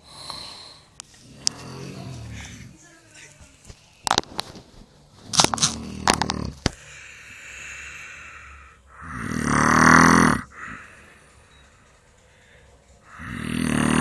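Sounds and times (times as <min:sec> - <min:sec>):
long loud snore: 0:01.2 - 0:02.8, 0:08.9 - 0:10.8, 0:13.1 - 0:14.0.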